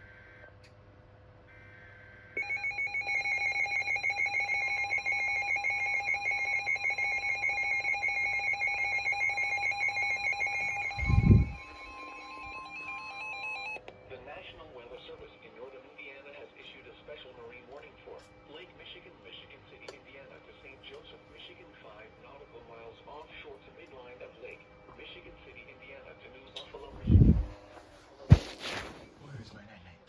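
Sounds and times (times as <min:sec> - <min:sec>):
warbling emergency alert tone: 0:02.4 - 0:13.8.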